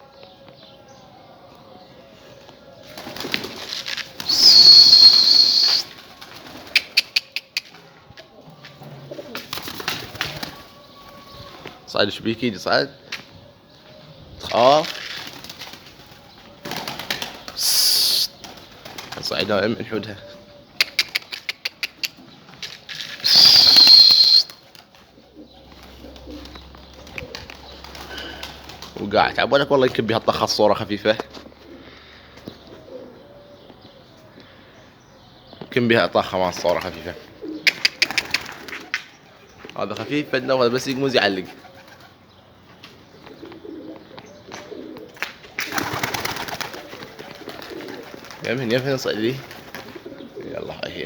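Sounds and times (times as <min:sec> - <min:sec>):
pigeons cooing: 0:02.5 - 0:11.9, 0:24.7 - 0:30.0, 0:31.2 - 0:51.0
pigeons flapping wings: 0:02.9 - 0:07.2, 0:09.3 - 0:10.7, 0:14.8 - 0:19.4, 0:23.0 - 0:25.1, 0:25.7 - 0:29.0, 0:37.6 - 0:39.1, 0:45.1 - 0:50.2
high steady whistle: 0:04.3 - 0:05.9, 0:23.2 - 0:24.6.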